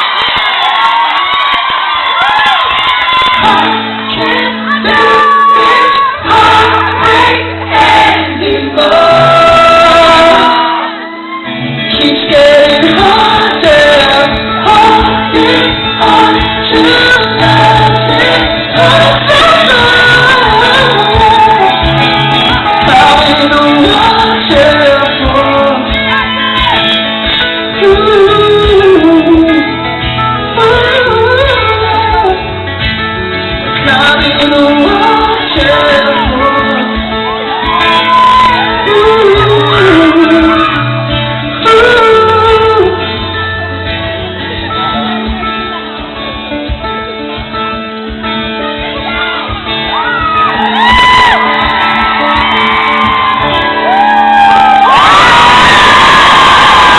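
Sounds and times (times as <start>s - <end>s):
pop-rock band playing live: 0.0s - 56.9s
person singing: 3.1s - 32.9s, 33.6s - 47.5s.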